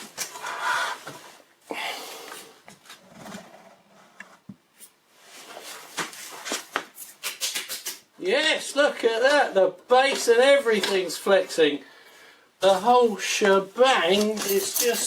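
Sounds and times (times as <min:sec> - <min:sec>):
metal parts clicking and knocking: 0:14.1 - 0:15.0.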